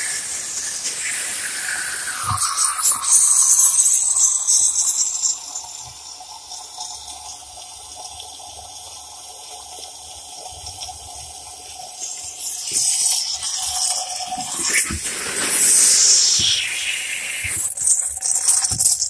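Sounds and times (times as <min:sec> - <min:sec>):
hissing water spray: 0:00.0 - 0:07.1, 0:12.0 - 0:19.0
water running: 0:00.0 - 0:08.3, 0:10.7 - 0:19.0.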